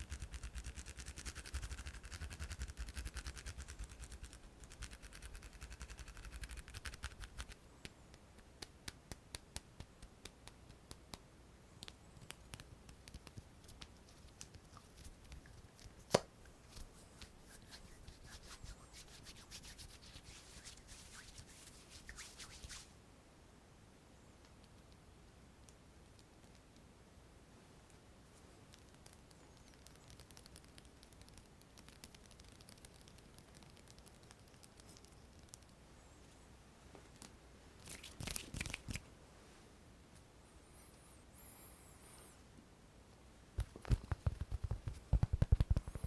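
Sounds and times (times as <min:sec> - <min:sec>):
hands rubbing: 0:00.1 - 0:11.2, 0:11.8 - 0:22.9, 0:37.8 - 0:39.0.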